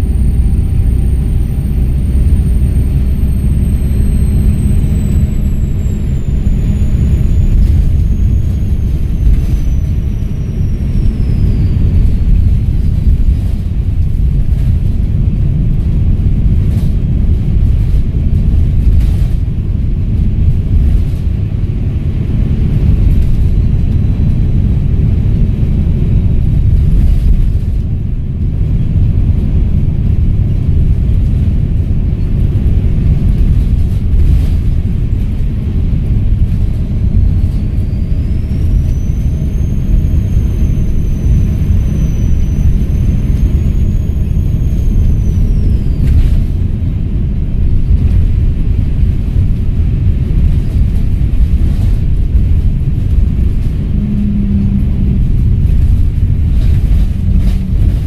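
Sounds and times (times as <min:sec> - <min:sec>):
turbo whistle: 0:00.0 - 0:13.5, 0:36.7 - 0:46.6
diesel bus engine rumbling: 0:00.0 - 0:58.0.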